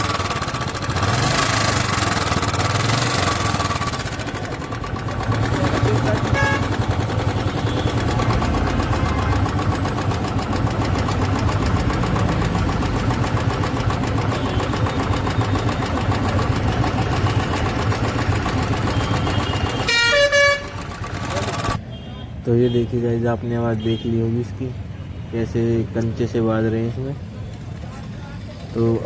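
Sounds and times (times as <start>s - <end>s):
engine valve clatter: 0.0s - 21.8s.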